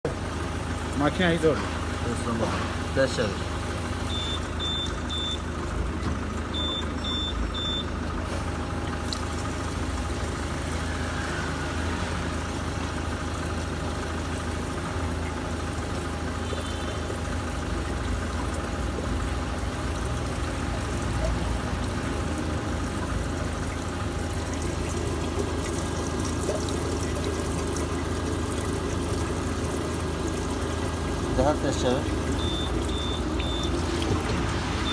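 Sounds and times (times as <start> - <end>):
vehicle engine running: 0.0 - 34.9
short high-pitched beeps: 4.1 - 5.4, 32.4 - 33.7.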